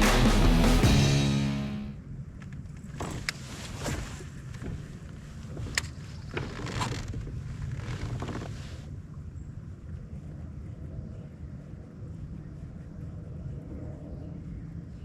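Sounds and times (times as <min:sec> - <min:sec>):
music: 0:00.0 - 0:02.0
wind and water rumble: 0:02.0 - 0:15.0.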